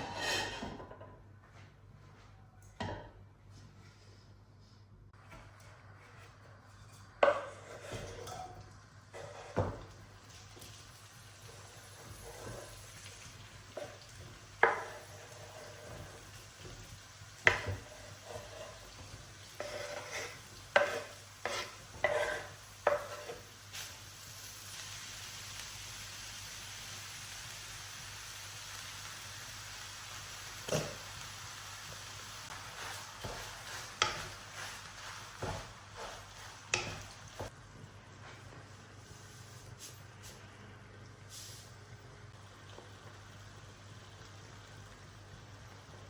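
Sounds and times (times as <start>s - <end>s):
food sizzling: 6.1s - 46.0s
utensil knocking and scraping pan: 17.4s - 23.4s, 32.5s - 37.5s.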